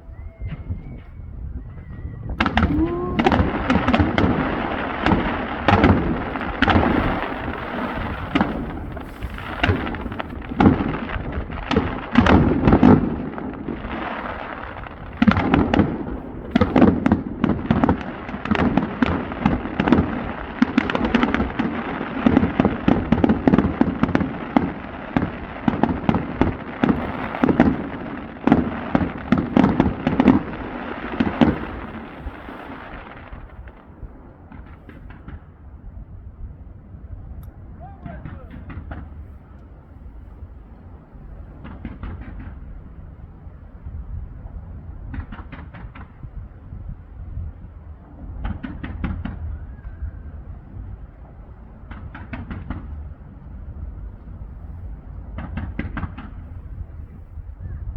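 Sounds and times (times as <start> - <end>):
rising firework whistle: 0.0 - 17.7, 22.3 - 33.9
fireworks bangs and crackling: 0.0 - 57.9.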